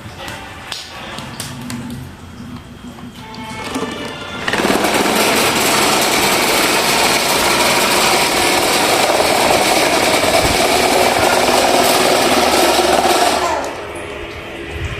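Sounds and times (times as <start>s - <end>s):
wall fan rattling: 0.0s - 14.9s.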